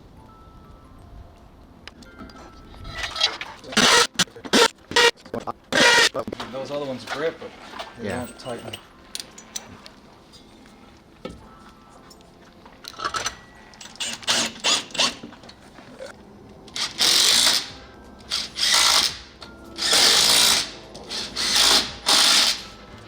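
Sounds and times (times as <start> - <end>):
power drill driving screws: 3.8 - 5.1, 5.8 - 6.1, 14.0 - 15.2, 16.8 - 17.7, 18.3 - 22.7.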